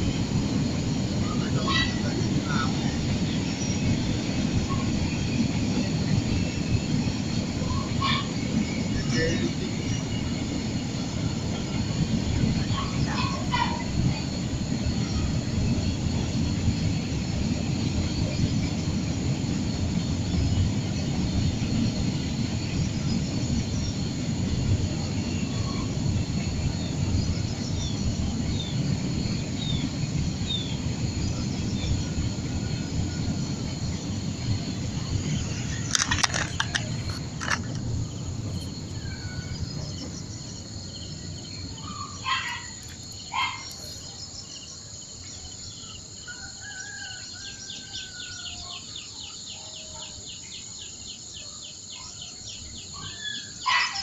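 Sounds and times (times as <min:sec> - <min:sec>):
high insect drone: 0:00.0 - 0:54.0
birds chirping and calling: 0:35.2 - 0:37.8.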